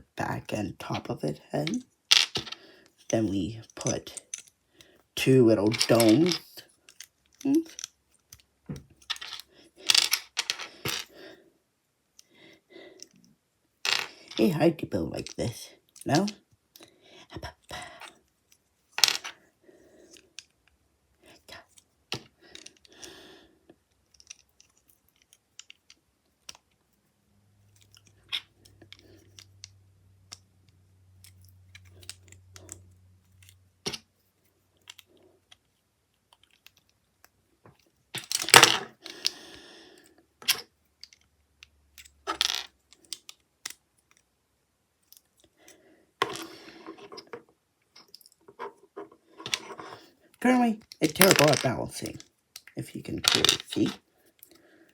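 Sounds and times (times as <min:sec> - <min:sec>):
plastic pieces clicking and rattling: 0:01.6 - 0:04.6, 0:05.2 - 0:11.1, 0:13.9 - 0:14.5, 0:15.2 - 0:16.4, 0:17.4 - 0:19.4, 0:21.6 - 0:23.0, 0:23.9 - 0:26.9, 0:31.2 - 0:34.1, 0:34.8 - 0:39.4, 0:40.4 - 0:44.3, 0:49.4 - 0:54.6.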